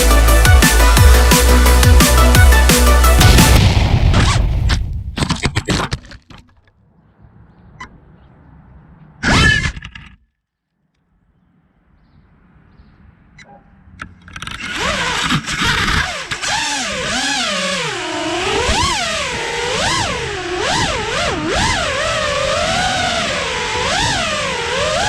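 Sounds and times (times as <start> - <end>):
drone motors whining: 14.4 - 25.0.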